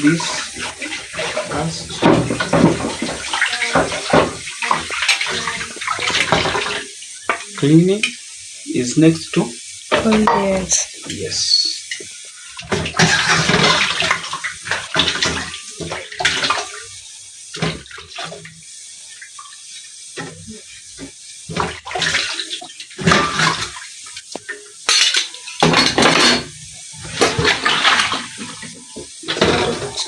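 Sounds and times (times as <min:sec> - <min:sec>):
water splashing: 0:00.0 - 0:08.0, 0:12.3 - 0:18.6, 0:20.2 - 0:24.7, 0:25.4 - 0:30.0
pots and utensils clattering: 0:00.0 - 0:08.2, 0:09.9 - 0:10.9, 0:11.9 - 0:16.9, 0:20.2 - 0:30.0.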